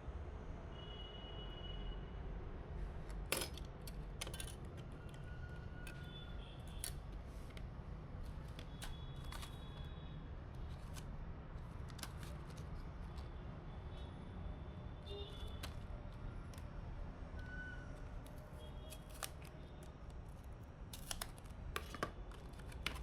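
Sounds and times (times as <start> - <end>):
computer parts clicking and tapping: 3.1 - 7.7, 21.0 - 23.0.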